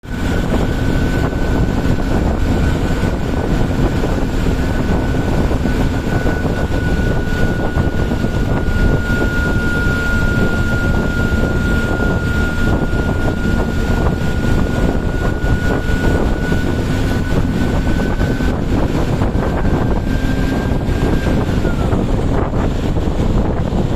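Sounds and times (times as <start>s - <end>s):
bus engine and road rumble: 0.0s - 23.9s
turbocharger whistle: 4.7s - 22.2s.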